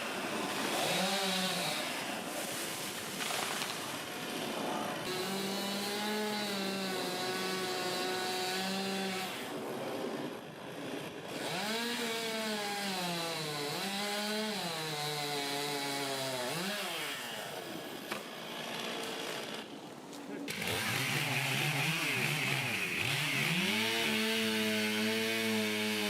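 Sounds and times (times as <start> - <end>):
chainsaw engine revving: 0.4 - 2.3, 4.3 - 10.1, 10.8 - 17.6, 20.5 - 26.0.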